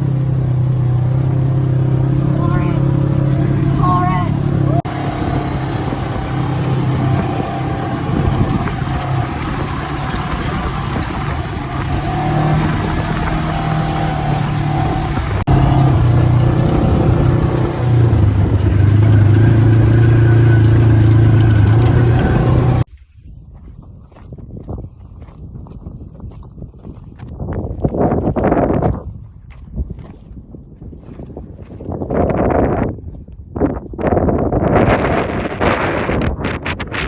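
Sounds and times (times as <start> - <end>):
atv engine running: 0.0 - 22.9.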